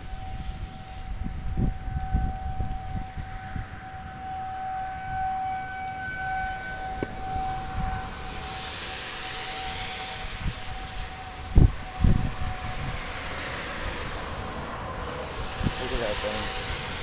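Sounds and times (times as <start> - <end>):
tornado warning siren: 0.0 - 17.0
rushing hiss: 7.0 - 17.0.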